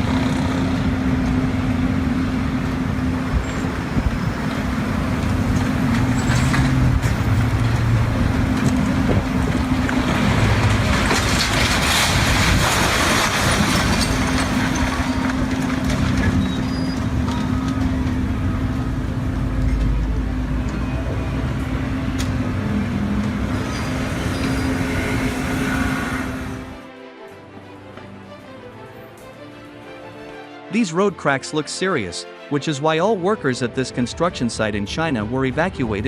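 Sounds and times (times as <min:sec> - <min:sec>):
heavy vehicle engine running: 0:00.0 - 0:26.8.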